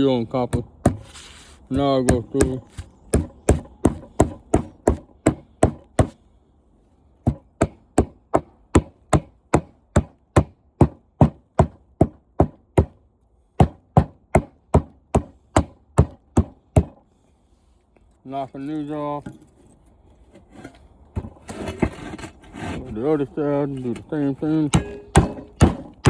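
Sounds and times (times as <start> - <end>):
hammer striking metal radiator: 1.7 - 6.1, 24.0 - 26.0.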